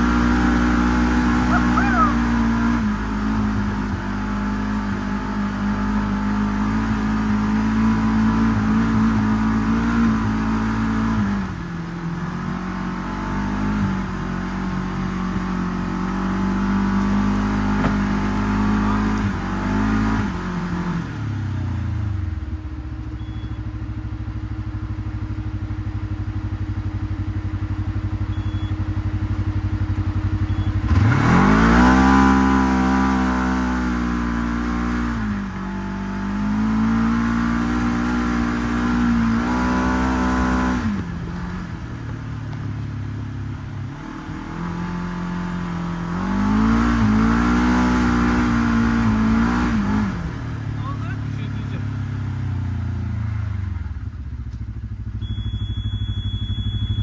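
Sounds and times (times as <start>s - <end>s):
utility vehicle engine revving: 0.0s - 57.0s.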